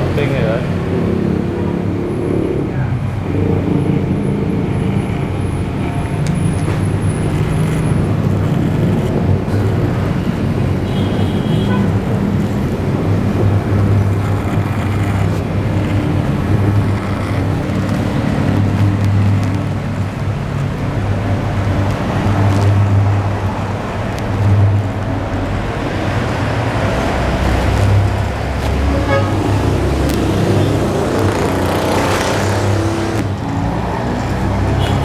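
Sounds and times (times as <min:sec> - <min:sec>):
vehicles passing: 0:00.0 - 0:35.0
car horn toot: 0:10.9 - 0:12.0, 0:28.9 - 0:29.5.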